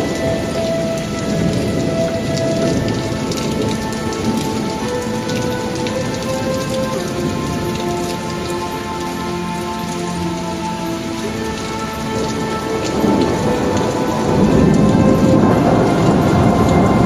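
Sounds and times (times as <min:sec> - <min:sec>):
steady heavy rain: 0:00.0 - 0:17.0
low rumble of thunder: 0:12.3 - 0:17.0.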